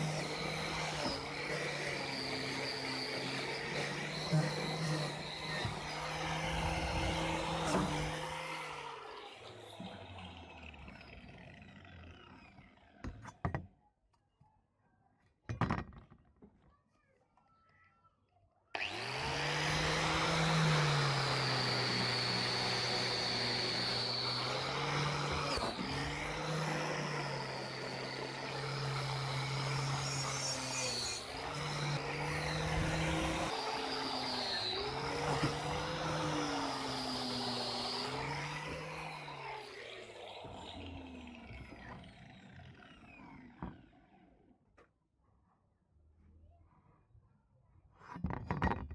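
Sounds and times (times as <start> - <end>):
power tool motor running: 0.0 - 13.0, 18.8 - 43.9.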